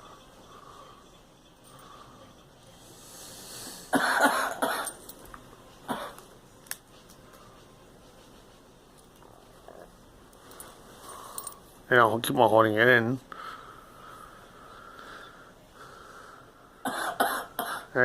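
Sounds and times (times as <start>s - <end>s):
girl coughing: 3.9s - 5.0s, 5.9s - 6.2s, 16.8s - 17.9s.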